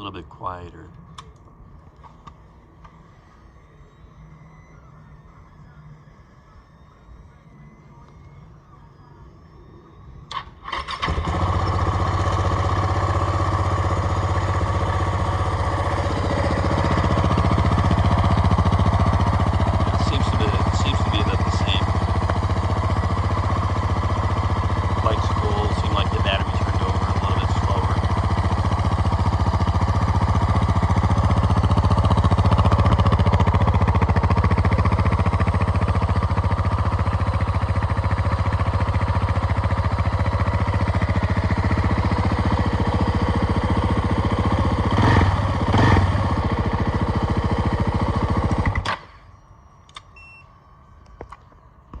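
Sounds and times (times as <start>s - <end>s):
motorcycle engine idling: 0.0s - 50.0s
throttle blips: 0.6s - 10.8s
faint engine ticks: 18.0s - 40.2s.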